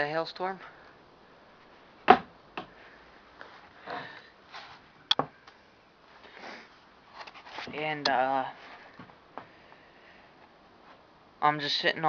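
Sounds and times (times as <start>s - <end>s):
person sniffing and breathing: 6.2s - 6.8s.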